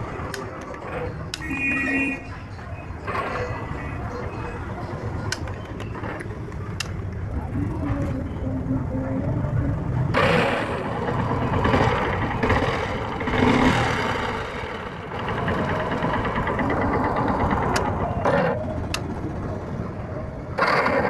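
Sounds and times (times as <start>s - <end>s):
motorcycle engine starting and running: 9.7s - 21.0s.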